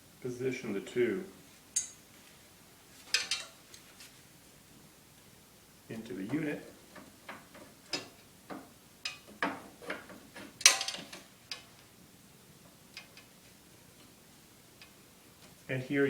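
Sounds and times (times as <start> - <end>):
poles knocking and clicking: 6.3 - 11.7.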